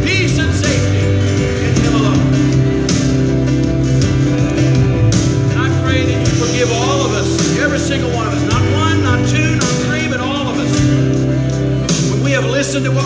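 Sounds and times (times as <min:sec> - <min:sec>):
person singing: 0:00.0 - 0:03.8, 0:04.4 - 0:13.0
worship music: 0:00.0 - 0:13.0.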